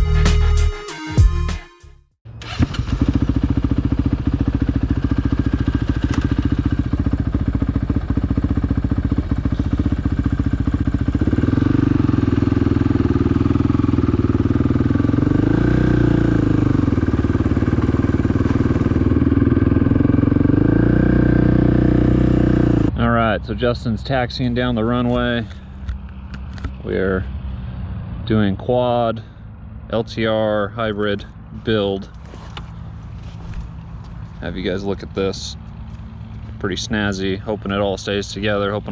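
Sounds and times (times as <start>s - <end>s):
airplane engine and propeller: 23.4s - 28.3s.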